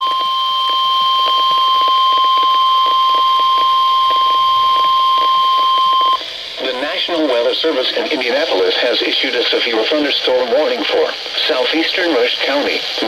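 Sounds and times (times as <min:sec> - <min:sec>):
steady warning alarm tone: 0:00.0 - 0:08.7.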